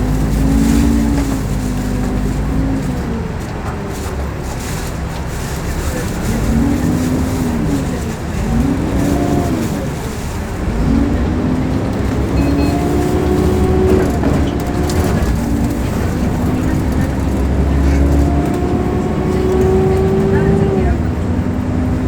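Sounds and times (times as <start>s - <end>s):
bus engine accelerating: 0.0s - 22.0s
pitched whine: 12.1s - 20.8s.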